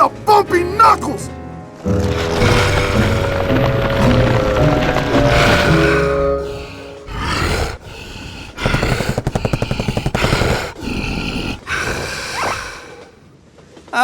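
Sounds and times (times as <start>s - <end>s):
rapid blows: 2.0s - 13.2s.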